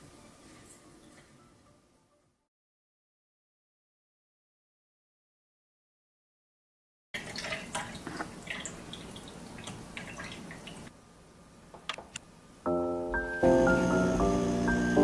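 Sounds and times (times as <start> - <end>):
liquid dripping and splashing: 7.2 - 10.9.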